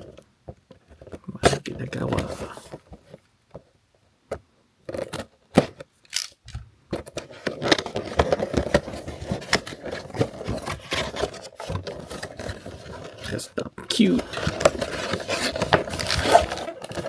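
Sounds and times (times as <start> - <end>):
cardboard packaging scraping: 1.0 - 3.2, 7.0 - 17.0.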